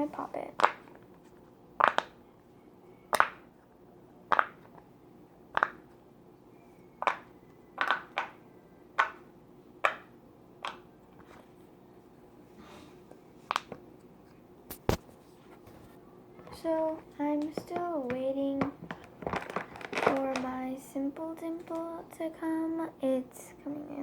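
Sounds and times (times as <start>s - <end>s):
fidget toy bubbles popping: 1.8s - 2.2s, 3.1s - 3.5s, 4.3s - 4.7s, 5.5s - 5.9s, 7.0s - 8.4s, 9.0s - 10.8s.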